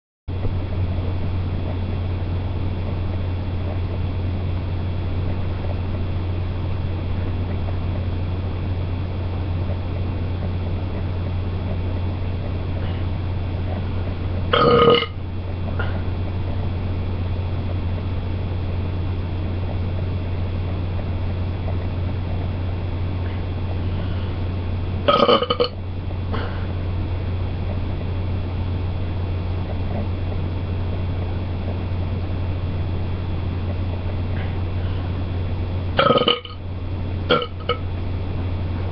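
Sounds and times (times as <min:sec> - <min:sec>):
low hum: 0:00.3 - 0:38.9
person belching: 0:14.5 - 0:15.2, 0:25.1 - 0:25.7, 0:36.0 - 0:36.6, 0:37.3 - 0:37.8.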